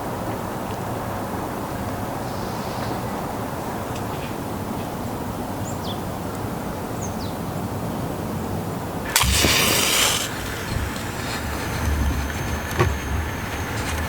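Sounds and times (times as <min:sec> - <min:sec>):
outdoor background rush: 0:00.0 - 0:14.0
loud noisy rustle burst: 0:09.1 - 0:14.0.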